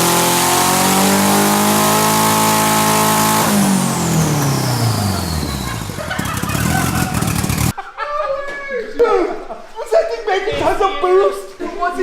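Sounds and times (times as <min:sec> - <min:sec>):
engine at high revs: 0:00.0 - 0:07.7.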